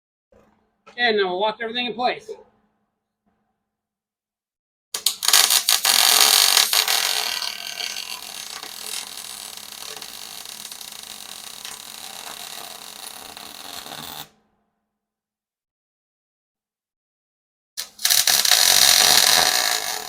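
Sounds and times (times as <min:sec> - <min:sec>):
welding arc crackling and hissing: 0:05.0 - 0:14.3, 0:17.8 - 0:20.0.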